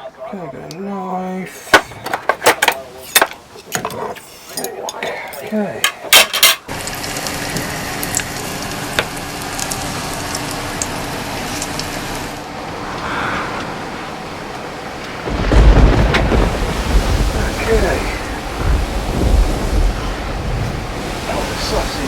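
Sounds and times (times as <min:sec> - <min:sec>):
wind and rain on camper: 0:00.4 - 0:22.0
gust buffeting microphone: 0:12.4 - 0:22.0.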